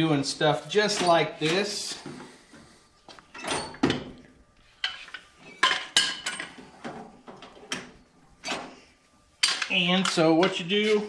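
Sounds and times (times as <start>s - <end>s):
metal tool clanking against metal: 9.4s - 11.0s.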